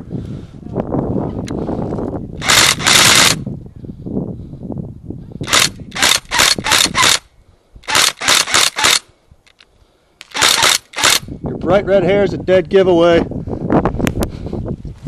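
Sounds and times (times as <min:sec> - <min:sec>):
airsoft guns firing bursts: 0:02.4 - 0:03.4, 0:05.5 - 0:07.2, 0:07.8 - 0:09.0, 0:10.3 - 0:11.2.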